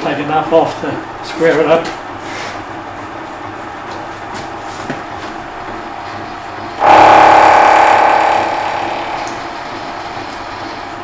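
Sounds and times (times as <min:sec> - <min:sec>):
loud ringing metal cut: 0:06.8 - 0:10.4
milling machine running: 0:06.8 - 0:10.4.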